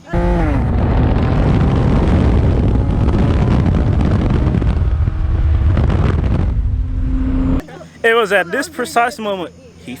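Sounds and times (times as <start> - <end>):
car engine and road noise: 0.0 - 7.6
wind buffeting microphone: 0.0 - 7.6.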